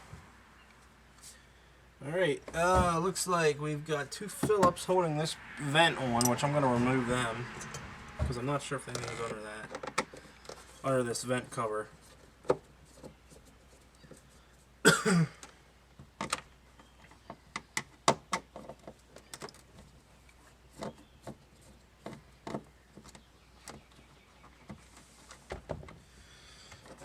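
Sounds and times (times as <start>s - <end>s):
plastic creak: 8.9s - 10.7s.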